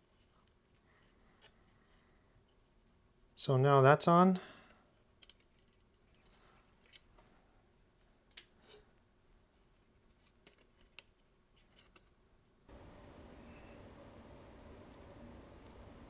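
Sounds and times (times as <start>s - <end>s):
faint steady hiss: 0.0s - 16.0s
faint clicks of camera parts: 5.1s - 7.3s.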